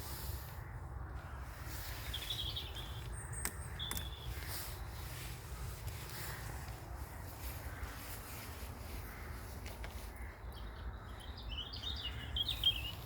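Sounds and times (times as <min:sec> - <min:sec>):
small bird chirping: 0:01.9 - 0:04.9, 0:10.2 - 0:13.0.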